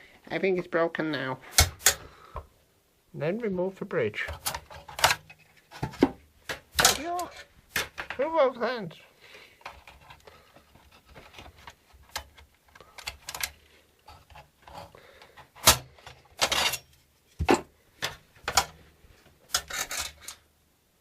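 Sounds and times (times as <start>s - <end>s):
plastic and metal parts rattling: 4.2s - 8.4s, 9.6s - 18.8s, 19.4s - 20.5s.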